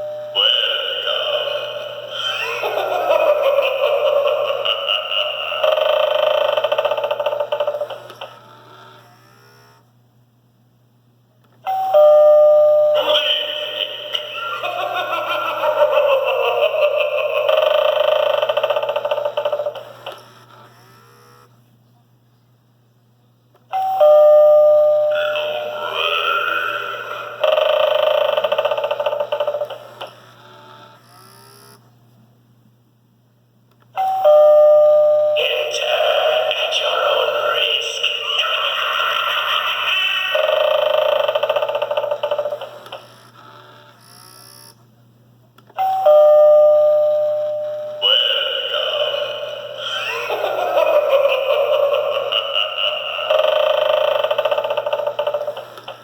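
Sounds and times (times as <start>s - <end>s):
electronic ding-dong chime: 11.7s - 13.0s, 23.7s - 25.7s, 34.0s - 35.7s, 45.8s - 48.0s.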